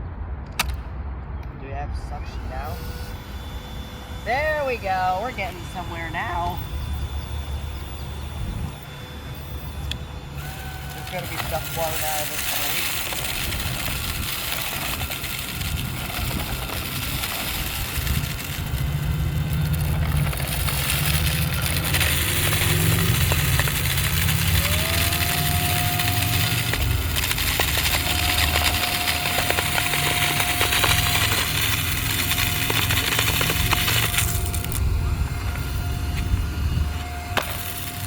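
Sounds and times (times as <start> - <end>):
stick vacuum running: 3.2 - 38.0
sand grains rattling: 10.4 - 38.0.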